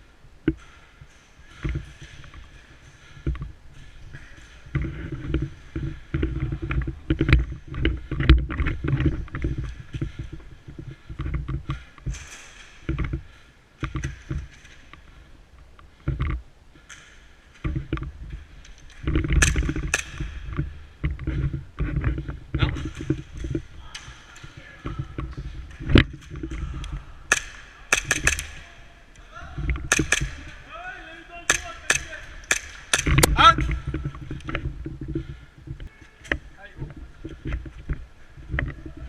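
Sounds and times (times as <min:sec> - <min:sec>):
sharp clicks and knocks: 0:15.8 - 0:30.5, 0:31.5 - 0:38.8
microphone handling rumble: 0:33.1 - 0:39.0.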